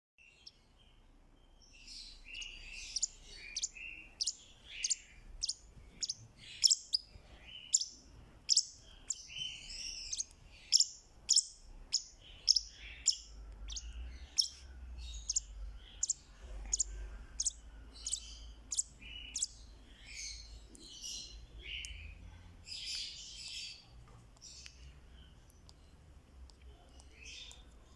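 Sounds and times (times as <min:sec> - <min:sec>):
bird chirping high: 0:01.7 - 0:23.8
soft bird chattering: 0:01.8 - 0:23.8.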